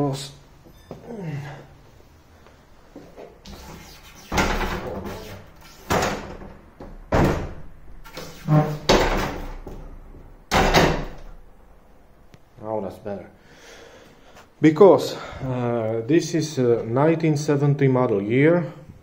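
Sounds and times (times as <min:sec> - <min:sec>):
loud knocks and clatters: 0:05.8 - 0:09.9, 0:10.5 - 0:11.3.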